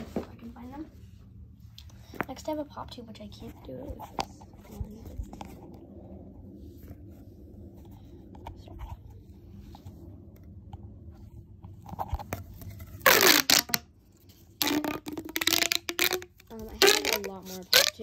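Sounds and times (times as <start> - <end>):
quiet plastic handling: 3.2 - 13.0
pop tube toy rasping: 13.0 - 13.8, 14.6 - 18.0.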